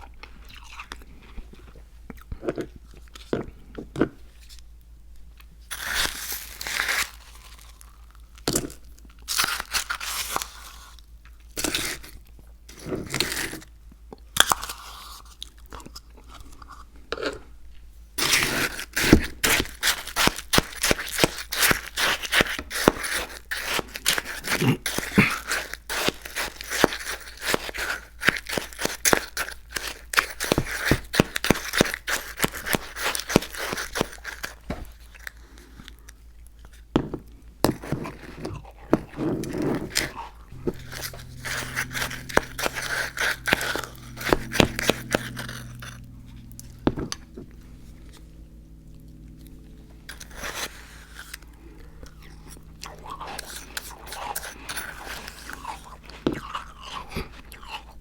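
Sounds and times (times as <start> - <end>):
low hum: 39.0 - 58.0
crunchy chewing and biting: 48.1 - 58.0.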